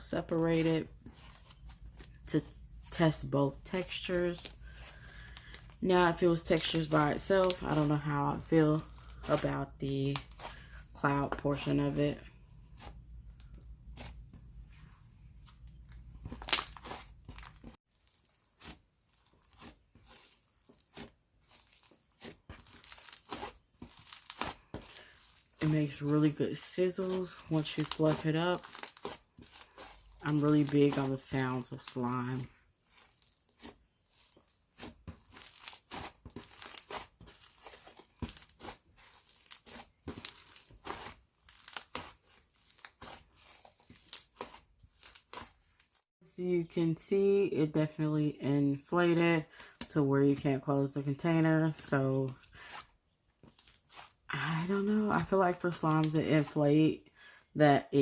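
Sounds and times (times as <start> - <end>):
slime crackling by hand: 0.1 - 12.0, 15.7 - 46.1, 53.4 - 54.3.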